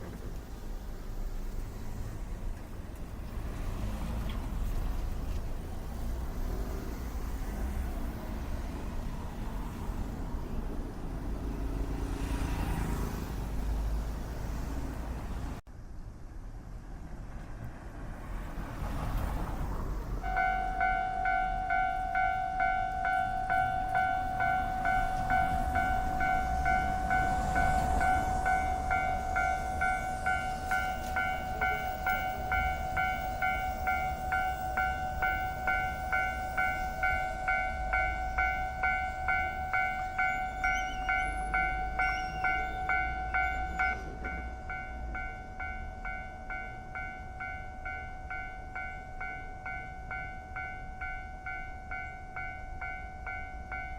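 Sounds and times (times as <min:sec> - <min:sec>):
train rumble: 0:00.0 - 0:15.6, 0:16.5 - 0:53.9
railroad crossing bell clanging: 0:20.2 - 0:53.9.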